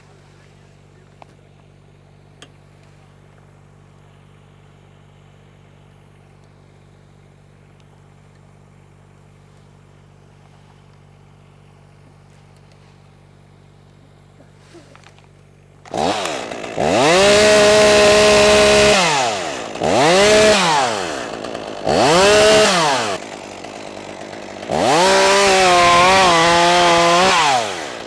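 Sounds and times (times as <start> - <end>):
engine idling: 18.2 - 28.0.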